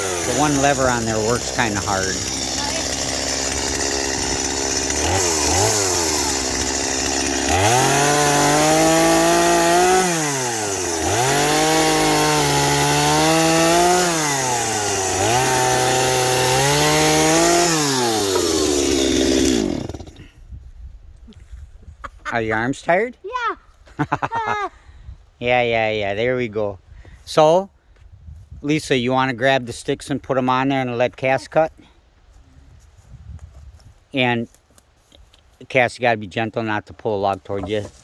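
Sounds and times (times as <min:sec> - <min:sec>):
chainsaw engine revving: 0:00.0 - 0:20.3.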